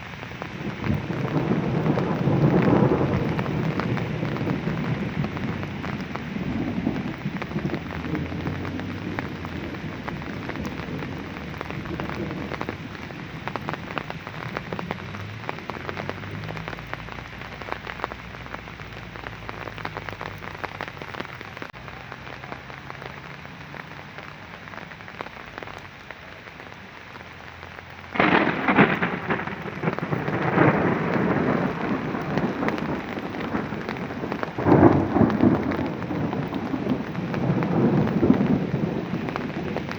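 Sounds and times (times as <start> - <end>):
rain pattering: 0.0 - 39.9
low rumble of thunder: 0.4 - 18.2, 28.1 - 39.9.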